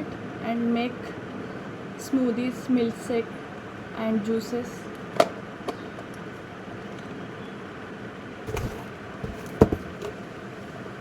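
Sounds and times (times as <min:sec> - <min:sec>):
steady background hiss: 0:00.0 - 0:11.0
hard plastic parts clicking: 0:08.5 - 0:10.2.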